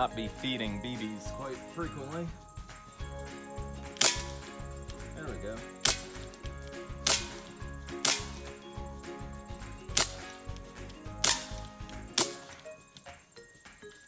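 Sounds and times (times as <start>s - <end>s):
air pistol shots: 3.9s - 4.6s, 5.7s - 8.6s, 9.9s - 10.6s, 11.2s - 12.7s.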